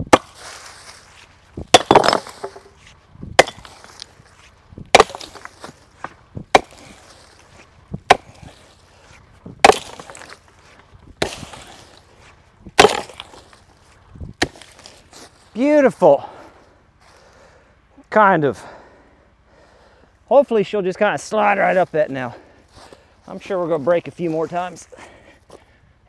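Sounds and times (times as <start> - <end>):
chopping blows into wood: 0.0 - 0.5, 3.4 - 4.1, 4.9 - 7.0, 8.0 - 8.6, 9.6 - 10.4, 11.2 - 11.9, 12.8 - 13.4, 14.4 - 14.9.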